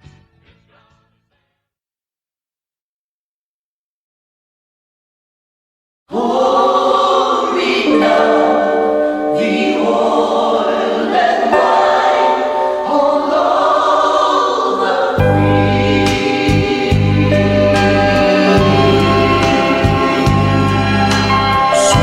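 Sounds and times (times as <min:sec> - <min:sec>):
choir singing harmonised chords: 0:06.1 - 0:22.0
deep bass line: 0:15.2 - 0:22.0.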